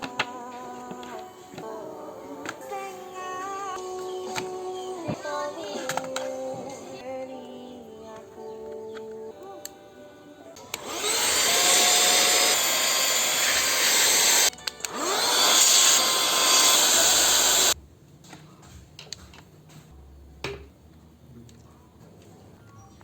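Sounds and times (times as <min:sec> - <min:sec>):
small electric motor tool spinning: 0:10.6 - 0:17.8.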